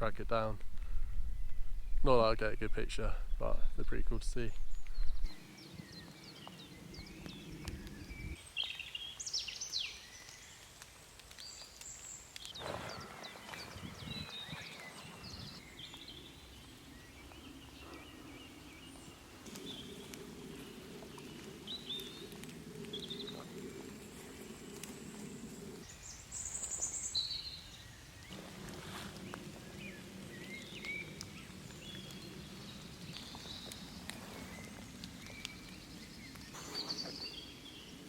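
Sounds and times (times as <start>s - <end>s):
low rushing background: 0.0s - 5.4s
birds chirping: 0.0s - 28.6s, 29.2s - 38.0s.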